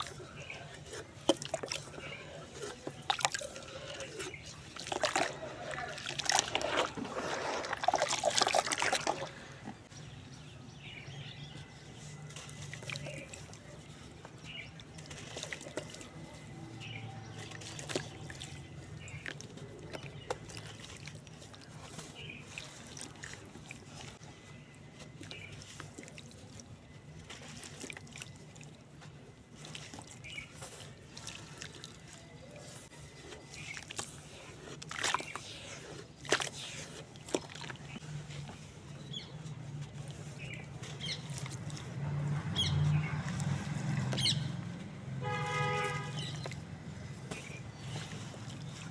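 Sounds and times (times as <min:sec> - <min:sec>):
wet sand splashing into water: 0:01.5 - 0:09.7, 0:39.8 - 0:48.9
water trickling and dripping: 0:36.2 - 0:48.9.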